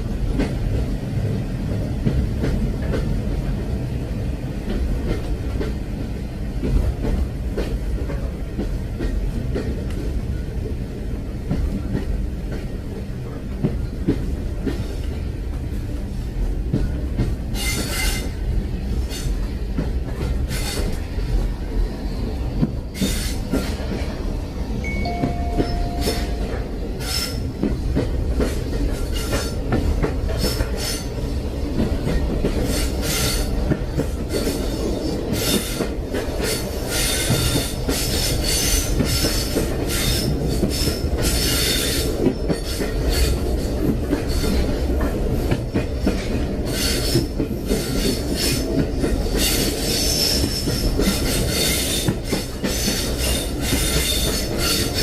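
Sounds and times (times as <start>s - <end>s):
train rumbling along rails: 0.0s - 55.0s
train wheels squealing and clattering: 16.1s - 24.3s, 27.0s - 55.0s.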